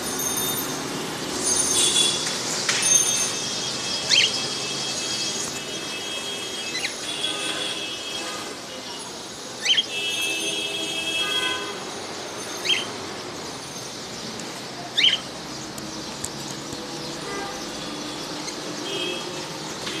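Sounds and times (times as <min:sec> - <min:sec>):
loud shrill bird calls: 0:03.2 - 0:05.6, 0:09.6 - 0:10.1, 0:12.5 - 0:13.0, 0:14.9 - 0:15.3
pet birds chirping: 0:04.1 - 0:04.5, 0:09.6 - 0:09.9, 0:12.6 - 0:13.0, 0:13.8 - 0:19.2.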